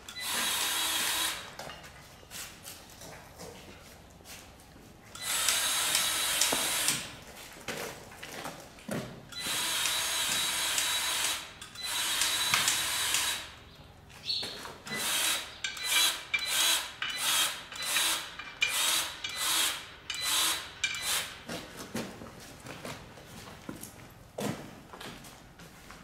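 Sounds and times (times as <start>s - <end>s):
impact wrench running on wheel nuts: 0.0s - 1.5s, 5.1s - 7.2s, 9.3s - 13.6s, 14.9s - 21.5s.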